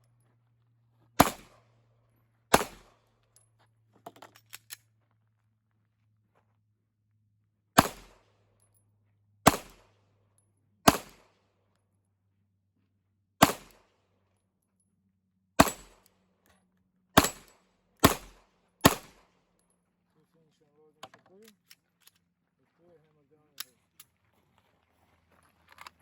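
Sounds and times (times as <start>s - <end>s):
pistol shots: 1.2s - 1.6s, 2.5s - 3.0s, 7.8s - 8.2s, 9.4s - 9.9s, 10.9s - 11.3s, 13.4s - 13.8s, 15.6s - 16.0s, 17.2s - 19.3s.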